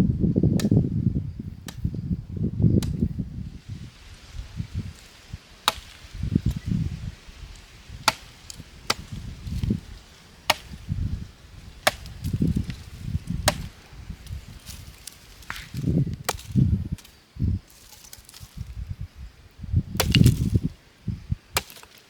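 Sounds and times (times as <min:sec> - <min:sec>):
dull low thuds: 0:05.6 - 0:17.6, 0:18.3 - 0:21.6
chopping cracks: 0:05.7 - 0:06.6, 0:10.5 - 0:10.8, 0:11.8 - 0:17.1, 0:20.0 - 0:20.6, 0:21.6 - 0:22.0
rustling: 0:11.7 - 0:18.8.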